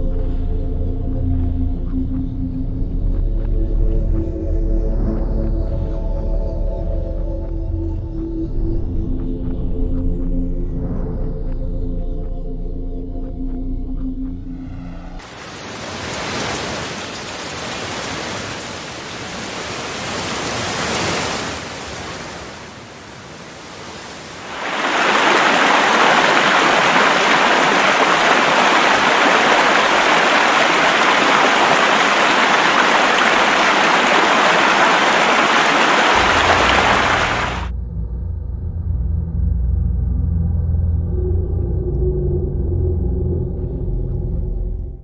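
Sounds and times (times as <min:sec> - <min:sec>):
rushing floodwater: 0:15.2 - 0:37.7.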